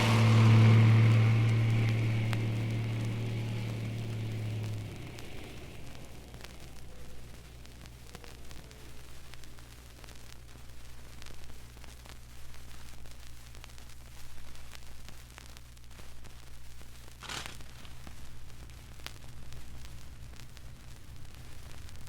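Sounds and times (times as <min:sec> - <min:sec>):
hissy burst: 0:00.0 - 0:10.6, 0:17.2 - 0:22.0
low hum: 0:00.0 - 0:11.8
vinyl crackling clicks: 0:00.0 - 0:22.0.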